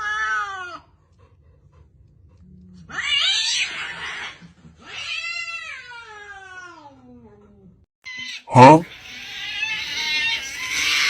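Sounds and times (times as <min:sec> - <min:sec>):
cat meowing: 0:08.1 - 0:11.0
cat yowling: 0:08.1 - 0:11.0.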